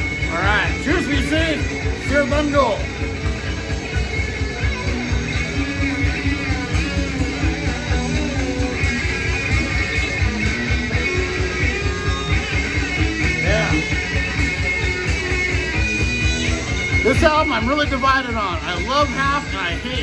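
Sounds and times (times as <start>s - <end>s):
hard rock on vinyl record: 0.0s - 20.0s.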